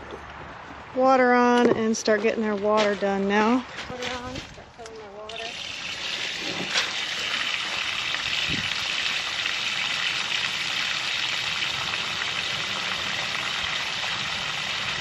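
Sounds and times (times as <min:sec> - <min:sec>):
water gushing: 0:05.3 - 0:15.0.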